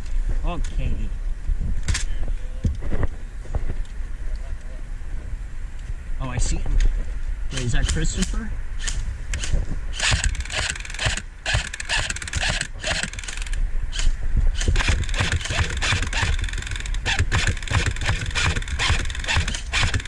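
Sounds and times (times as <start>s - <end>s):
airsoft machine gun firing bursts: 10.0s - 13.5s, 14.6s - 20.0s.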